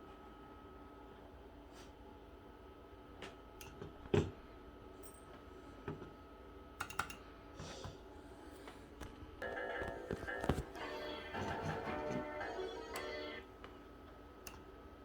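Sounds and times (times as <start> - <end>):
faint electronic hum: 0.0 - 15.0
computer keyboard clicks: 6.8 - 7.2
music: 9.4 - 13.4.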